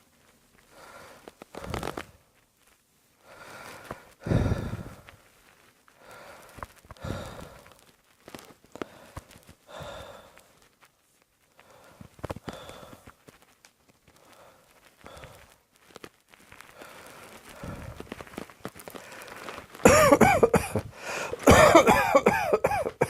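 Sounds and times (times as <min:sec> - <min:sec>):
person breathing: 0:00.7 - 0:02.0, 0:03.2 - 0:05.3, 0:06.0 - 0:07.9, 0:08.8 - 0:10.6, 0:11.5 - 0:13.2, 0:14.2 - 0:15.6, 0:16.7 - 0:18.2, 0:18.9 - 0:19.8, 0:20.8 - 0:22.2
person coughing: 0:19.8 - 0:23.0.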